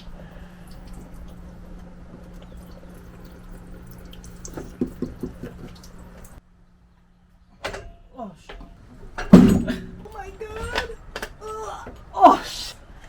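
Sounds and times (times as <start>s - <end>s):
fluid dripping into pan: 0.0s - 6.4s.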